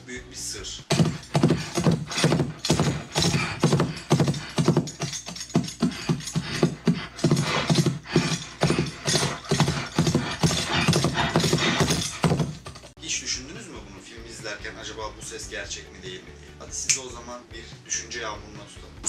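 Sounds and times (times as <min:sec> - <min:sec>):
horse hoofbeats clip-clopping: 0:00.9 - 0:13.0.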